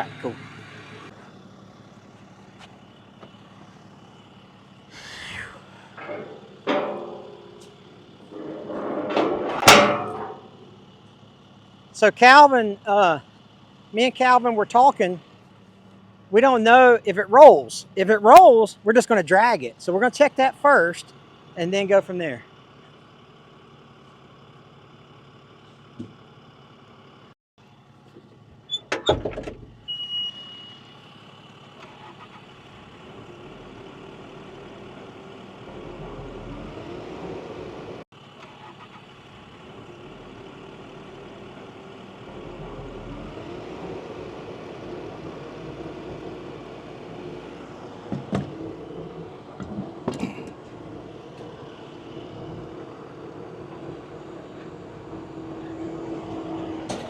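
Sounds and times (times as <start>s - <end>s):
diesel engine revving: 0.0s - 19.3s, 30.8s - 57.0s
metal clanks: 5.9s - 10.9s, 47.5s - 52.8s.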